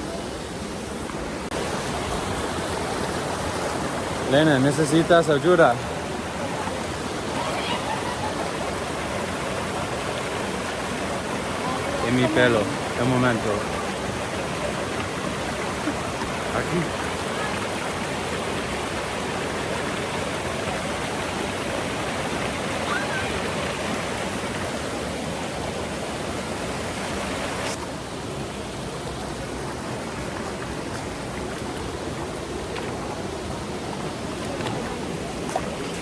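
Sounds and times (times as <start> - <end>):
stream and waterfall rushing: 0.0 - 36.0.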